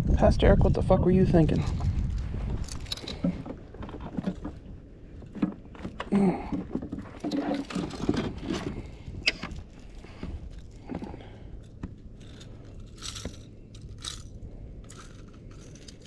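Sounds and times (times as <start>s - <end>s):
pliers clicking and rattling: 7.2s - 16.0s.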